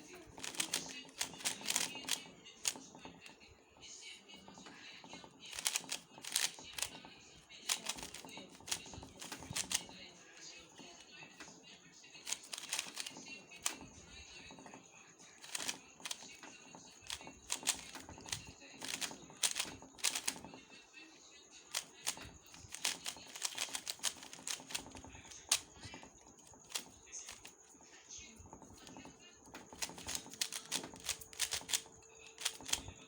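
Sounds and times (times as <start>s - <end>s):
puzzle cube plastic clicks: 0.2s - 2.8s, 5.5s - 7.0s, 7.6s - 10.0s, 12.2s - 13.8s, 15.4s - 20.4s, 21.7s - 27.5s, 29.6s - 33.0s.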